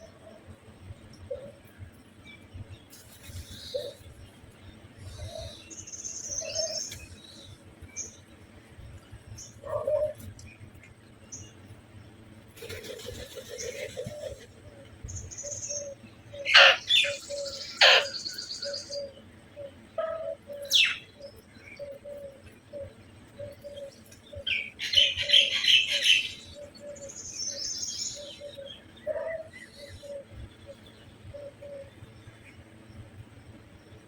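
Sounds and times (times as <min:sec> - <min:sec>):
sharp high bird calls: 0:15.4 - 0:19.1.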